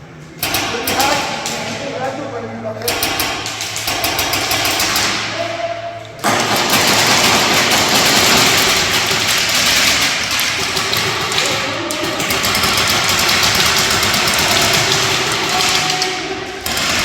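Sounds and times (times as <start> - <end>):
airsoft gun full-auto firing: 2.9 - 5.3, 6.2 - 11.6, 12.2 - 16.0, 16.6 - 17.0.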